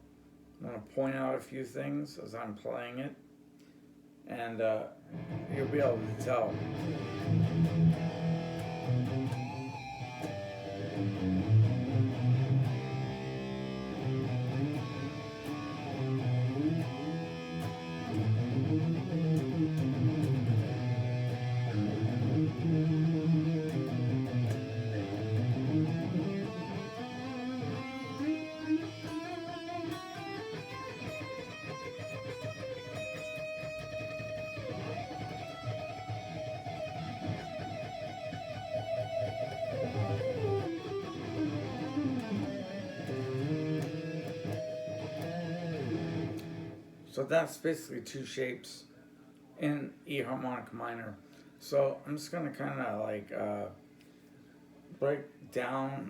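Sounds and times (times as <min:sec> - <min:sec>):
guitar playing scale runs: 0:05.1 - 0:47.0.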